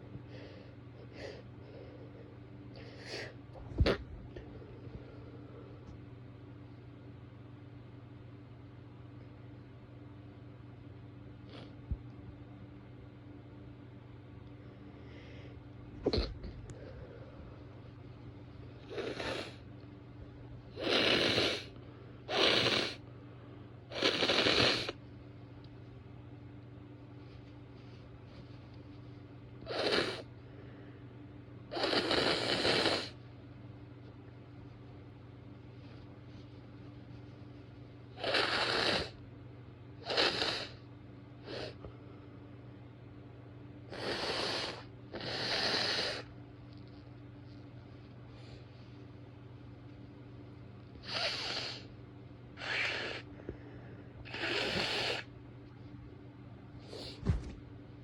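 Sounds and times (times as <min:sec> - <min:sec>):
woman blowing her nose: 0:52.6 - 0:53.2, 0:54.3 - 0:55.3.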